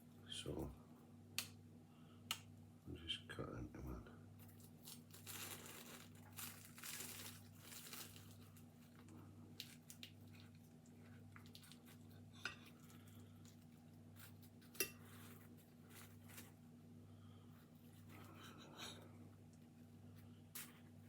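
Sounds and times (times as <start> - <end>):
low steady hum: 0.0 - 21.0
knife scraping through pastry: 14.1 - 16.6.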